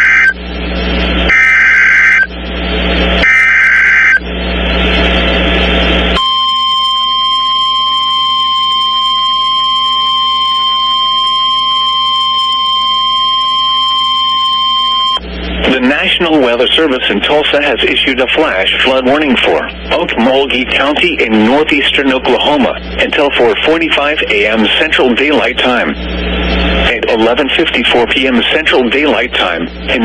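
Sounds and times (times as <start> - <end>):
screeching data squawks: 0.0 - 0.4, 1.3 - 2.3, 3.2 - 4.2
steady warning alarm tone: 0.0 - 4.4, 5.6 - 30.0
radio hiss: 0.0 - 6.2, 15.2 - 30.0.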